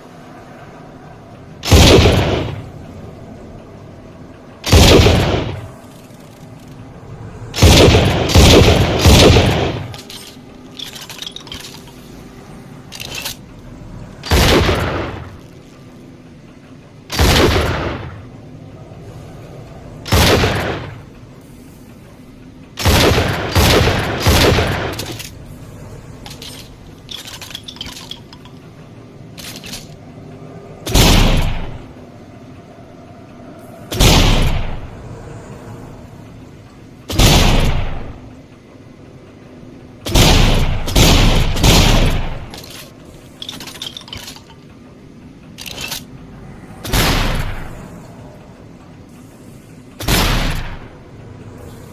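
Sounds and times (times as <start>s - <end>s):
shotgun shots: 1.6s - 2.6s, 4.7s - 5.7s, 7.6s - 9.9s, 14.2s - 15.3s, 17.1s - 18.2s, 20.1s - 21.0s, 22.8s - 25.2s, 30.9s - 31.8s, 33.9s - 34.8s, 37.1s - 38.1s, 40.1s - 42.5s, 50.0s - 50.9s
clicking and rattling: 9.8s - 17.0s, 24.0s - 32.5s, 42.4s - 46.4s.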